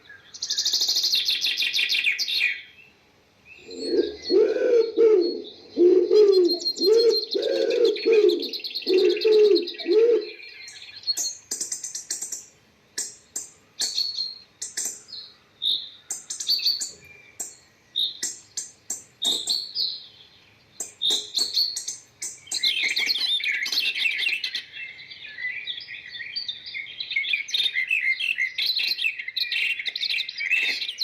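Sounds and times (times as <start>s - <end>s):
small birds chirping: 0.0s - 31.0s
dove cooing: 3.6s - 10.4s.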